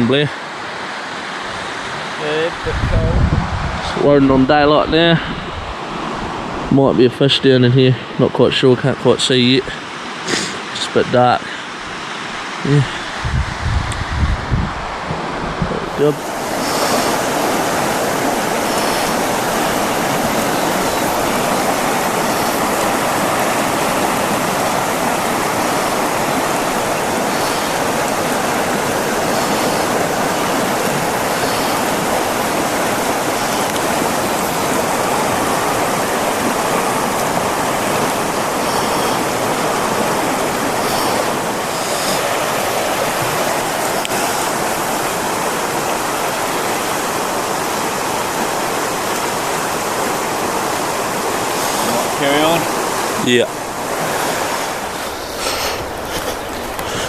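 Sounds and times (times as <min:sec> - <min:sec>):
river water rushing over rocks: 0:14.8 - 0:57.0.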